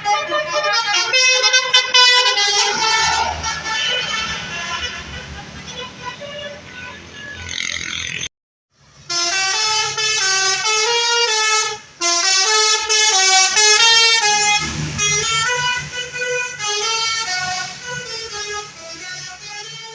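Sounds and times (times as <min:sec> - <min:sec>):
multi-tone bus air horn tune: 0:00.0 - 0:08.0, 0:08.8 - 0:19.9
low rumble: 0:02.4 - 0:04.5.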